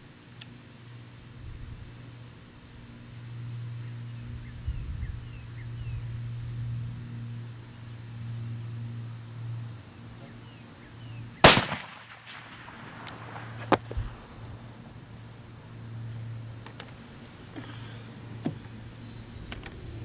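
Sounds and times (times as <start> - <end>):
steady low hum: 0.0 - 20.0
rifle shot: 11.4 - 14.6.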